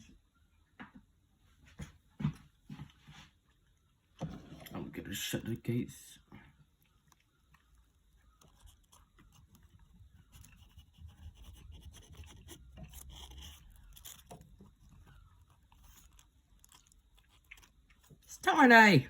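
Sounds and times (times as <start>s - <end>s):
faint handling clicks and scrapes: 7.0s - 18.2s.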